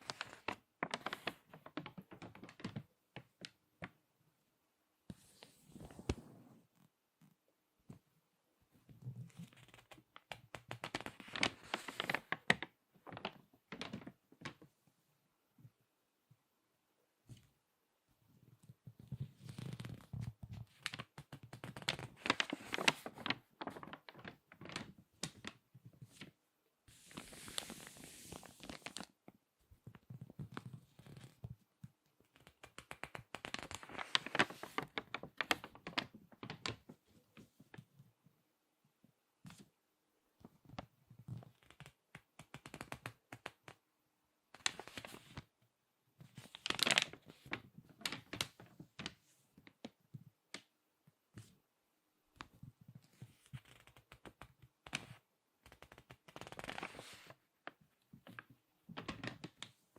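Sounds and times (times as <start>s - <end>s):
magazine pages crackling: 0.0s - 2.9s, 9.4s - 14.6s, 19.2s - 26.3s, 26.9s - 29.2s, 32.4s - 37.0s, 44.6s - 45.5s, 46.3s - 49.8s, 53.1s - 59.8s.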